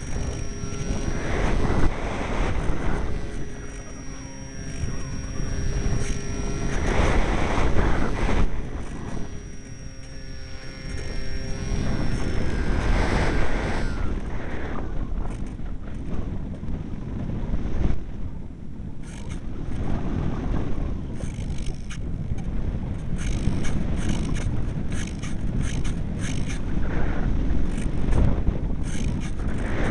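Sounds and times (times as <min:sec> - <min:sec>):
high whine sliding down: 0:00.0 - 0:15.4
wind buffeting microphone: 0:00.0 - 0:29.9.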